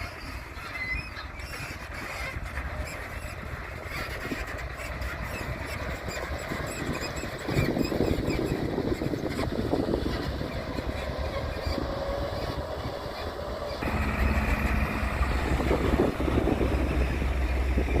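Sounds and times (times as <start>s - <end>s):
heavy machinery engine: 0.0s - 18.0s.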